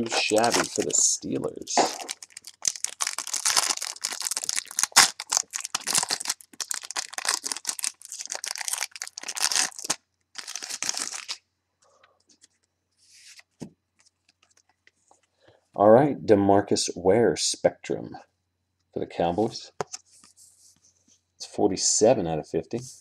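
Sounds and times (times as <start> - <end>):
plastic packaging crinkling: 0.0 - 11.4.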